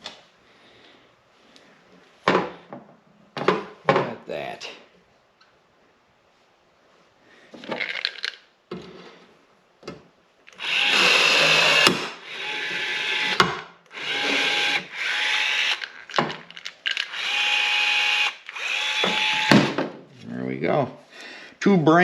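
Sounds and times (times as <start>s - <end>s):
power drill whining: 10.5s - 16.2s, 16.9s - 19.8s.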